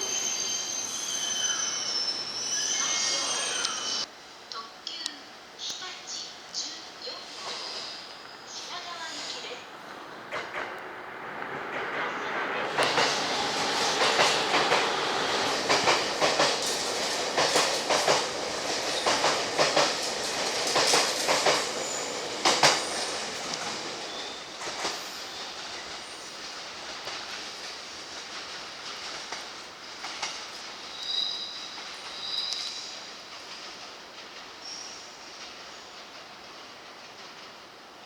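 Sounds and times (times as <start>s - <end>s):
train wheels clacking over rail joints: 10.3s - 30.8s.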